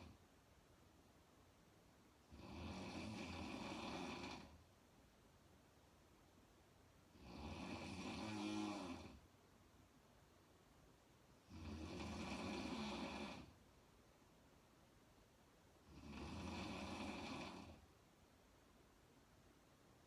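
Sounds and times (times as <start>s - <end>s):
woman snoring: 2.3s - 4.6s, 7.2s - 9.2s, 11.4s - 13.6s, 15.9s - 17.8s.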